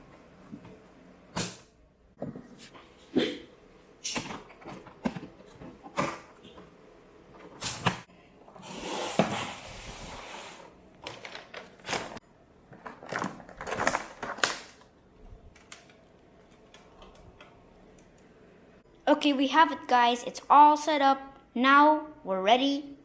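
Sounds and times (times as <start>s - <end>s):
packaging rustling: 11.0s - 14.9s.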